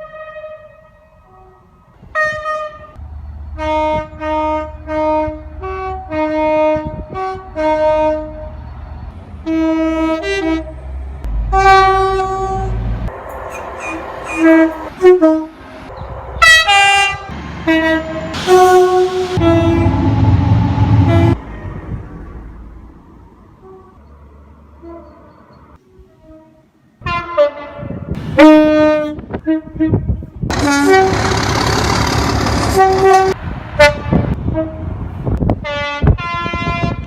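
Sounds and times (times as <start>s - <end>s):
multi-tone train horn blasts: 0.0s - 3.0s, 3.6s - 8.6s, 9.4s - 21.8s, 23.6s - 24.0s, 24.8s - 31.4s, 32.6s - 37.0s
low rumble: 17.2s - 23.6s.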